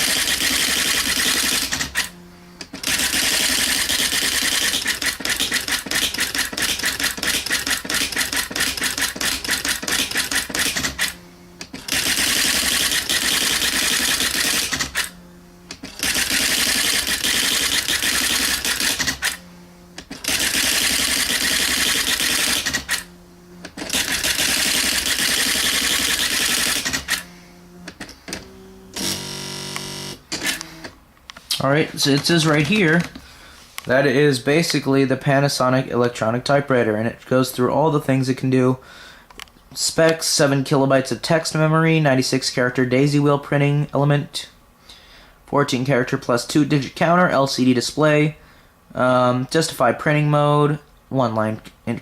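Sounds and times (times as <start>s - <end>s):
daisy-wheel typewriter printing: 0.0s - 31.0s, 32.0s - 33.2s.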